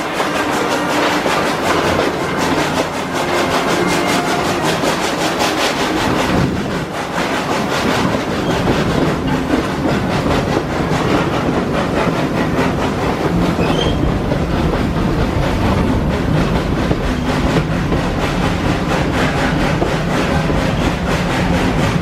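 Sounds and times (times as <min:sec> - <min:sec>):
train wheels clickety-clack: 0:00.0 - 0:22.0
faint wheel squeal: 0:13.6 - 0:14.1.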